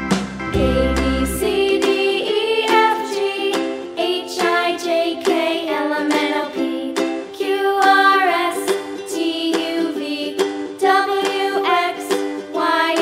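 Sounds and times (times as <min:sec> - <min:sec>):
upbeat background music: 0:00.0 - 0:06.4
plucked ukulele: 0:00.0 - 0:13.0.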